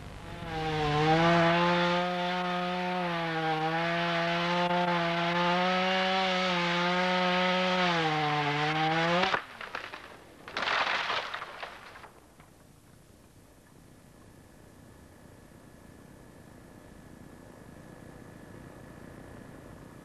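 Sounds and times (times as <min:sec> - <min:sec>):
wood chipper running: 0:00.0 - 0:12.6.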